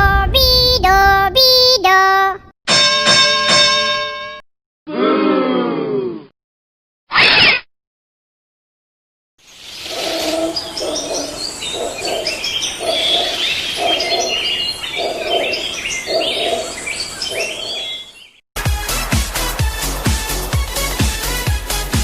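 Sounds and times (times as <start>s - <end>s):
birds chirping and whistling: 9.6s - 18.4s.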